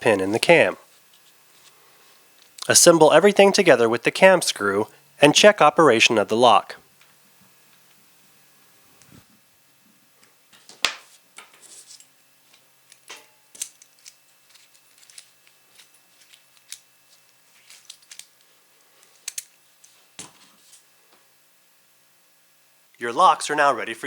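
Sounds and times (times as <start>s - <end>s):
small metal clicks and scrapes: 11.4s - 20.0s.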